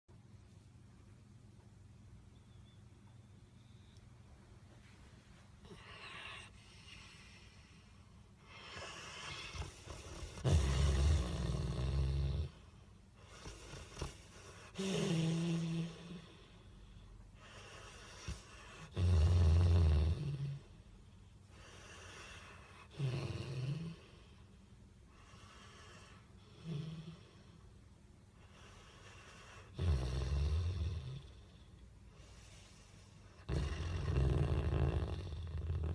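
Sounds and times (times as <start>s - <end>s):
soft breathing: 2.4s - 11.3s, 31.2s - 33.5s
dog snoring: 8.4s - 16.6s, 17.4s - 20.8s, 21.5s - 24.3s, 25.2s - 27.5s, 28.4s - 35.9s.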